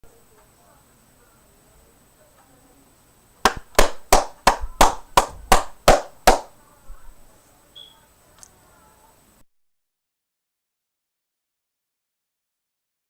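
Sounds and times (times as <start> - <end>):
sharp claps: 3.4 - 6.5.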